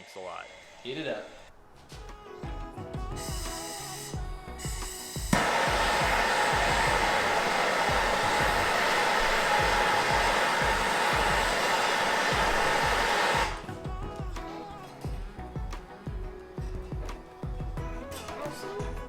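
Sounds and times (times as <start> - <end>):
background music with beat: 0.0 - 19.0
gas torch hissing: 3.1 - 13.7.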